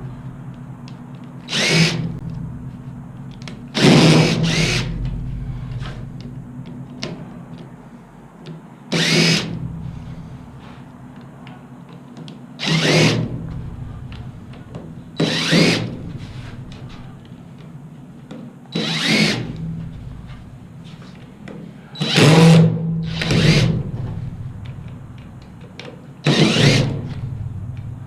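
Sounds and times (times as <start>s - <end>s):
power drill removing screws: 1.5s - 2.1s, 3.8s - 5.0s, 8.9s - 9.6s, 12.6s - 13.3s, 15.2s - 16.0s, 18.8s - 19.6s, 22.0s - 23.8s, 26.2s - 27.2s.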